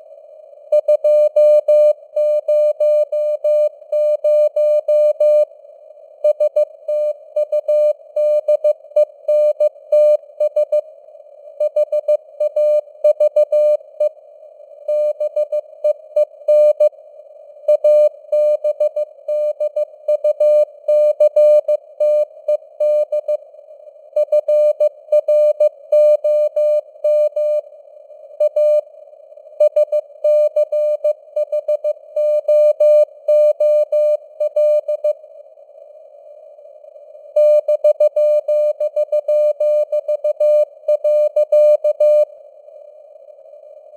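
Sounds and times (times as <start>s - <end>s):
faint radio noise hiss: 0.0s - 43.9s
morse code beeps: 17.7s - 23.3s.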